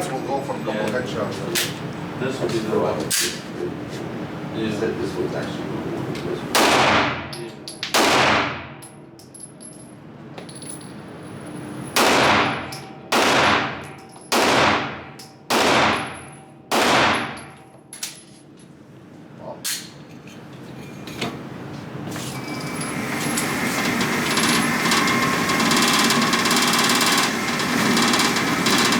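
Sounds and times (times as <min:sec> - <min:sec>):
pistol shots echoing: 0:06.5 - 0:08.8, 0:12.0 - 0:17.6.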